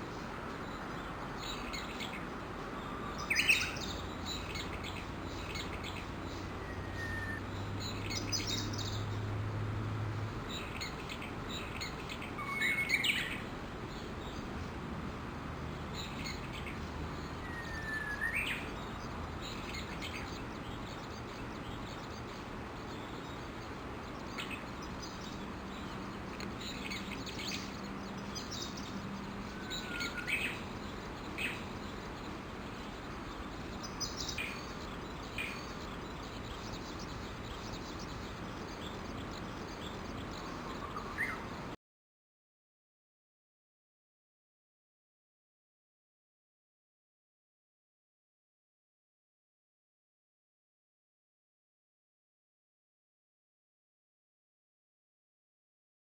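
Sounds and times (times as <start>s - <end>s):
steady background hiss: 0.0s - 41.8s
bush warblers calling: 16.0s - 41.7s.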